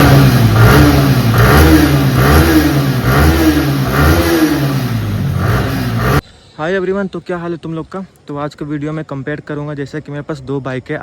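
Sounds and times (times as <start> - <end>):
motorcycle engine revving: 0.0 - 6.2.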